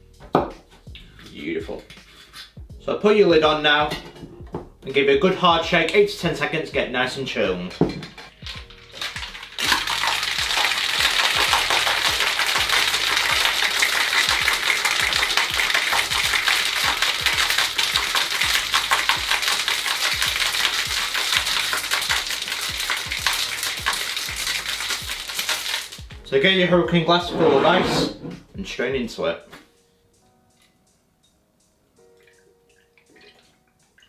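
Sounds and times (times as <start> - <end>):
ice rattling in cocktail shaker: 7.7 - 26.1.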